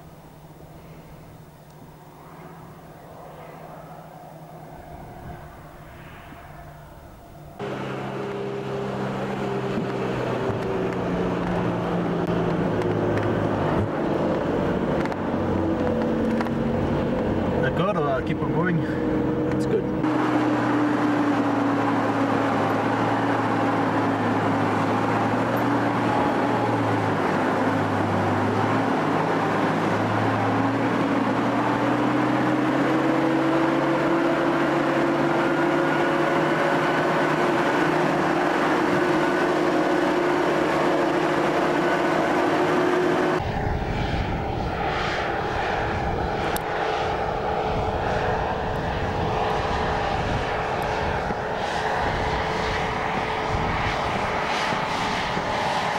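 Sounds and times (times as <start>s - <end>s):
light aircraft engine droning: 0.0s - 55.9s.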